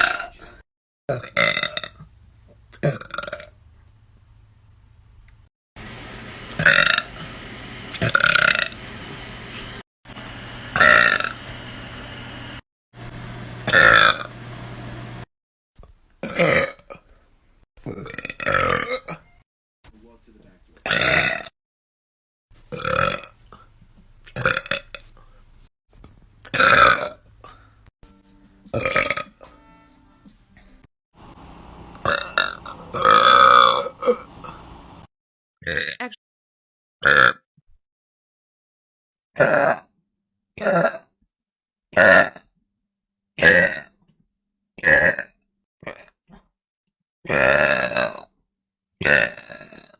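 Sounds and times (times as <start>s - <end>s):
person belching loudly: 0.0s - 2.0s, 2.8s - 3.5s, 6.5s - 7.1s, 7.9s - 8.8s, 10.8s - 11.4s, 13.6s - 14.4s, 16.2s - 17.0s, 17.8s - 19.3s, 20.8s - 21.5s, 22.7s - 23.4s, 24.4s - 24.9s, 26.5s - 27.6s, 28.7s - 29.4s, 31.9s - 34.6s, 35.6s - 36.2s, 37.0s - 37.4s, 39.4s - 39.9s, 40.6s - 41.1s, 42.0s - 42.5s, 43.4s - 44.0s, 44.8s - 46.2s, 47.2s - 48.3s, 49.0s - 49.9s
person burping: 0.0s - 2.1s, 2.8s - 3.6s, 6.5s - 7.1s, 7.9s - 8.8s, 10.8s - 11.4s, 13.7s - 14.3s, 16.2s - 17.2s, 17.8s - 19.4s, 20.8s - 21.5s, 22.7s - 23.4s, 24.4s - 25.0s, 26.5s - 27.7s, 28.7s - 29.4s, 31.9s - 34.6s, 35.6s - 36.2s, 37.0s - 37.5s, 39.4s - 39.9s, 40.6s - 41.1s, 42.0s - 42.5s, 43.4s - 44.0s, 44.8s - 46.4s, 47.2s - 48.3s, 49.0s - 49.9s.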